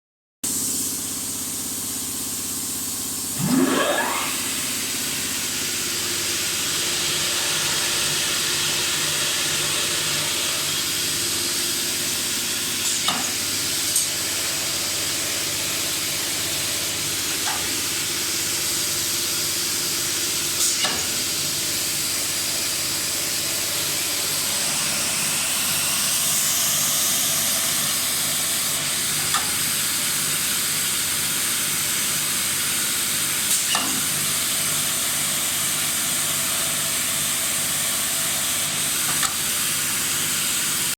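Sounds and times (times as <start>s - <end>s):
saw running with hiss and hum: 0.5s - 40.9s
rising whine: 3.4s - 6.3s.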